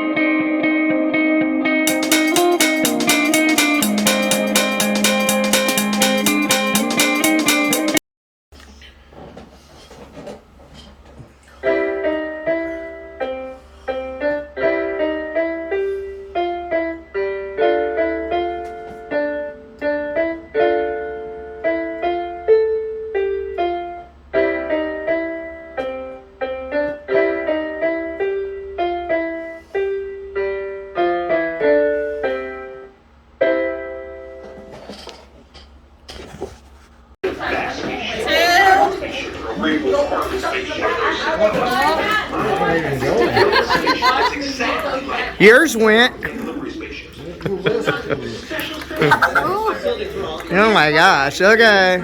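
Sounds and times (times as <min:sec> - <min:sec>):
piano playing: 0:01.9 - 0:08.0, 0:11.6 - 0:34.7, 0:37.4 - 0:46.1.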